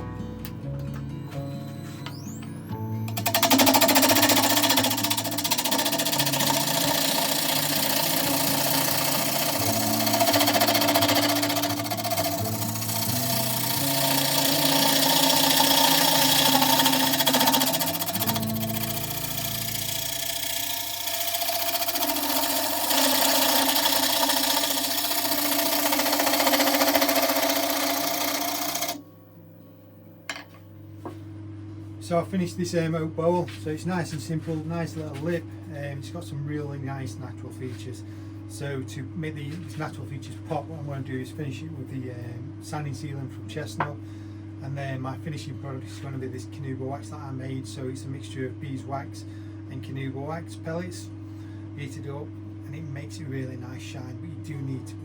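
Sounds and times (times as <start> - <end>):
wood lathe cutting with rapid ticking: 3.1 - 29.0.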